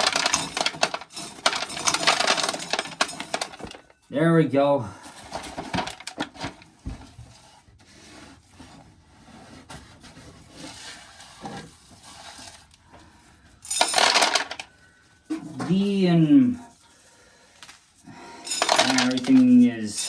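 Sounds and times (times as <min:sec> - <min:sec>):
corn kernels rattling into container: 0:00.0 - 0:03.9, 0:05.5 - 0:06.6, 0:13.7 - 0:14.7, 0:18.5 - 0:20.0.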